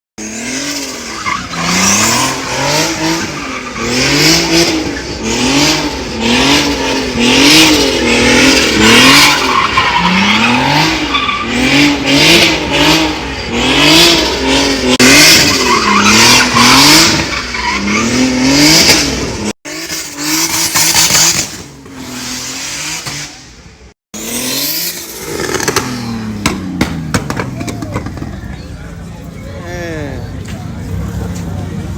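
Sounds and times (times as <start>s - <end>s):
turbocharged engine revving: 0.2s - 28.6s.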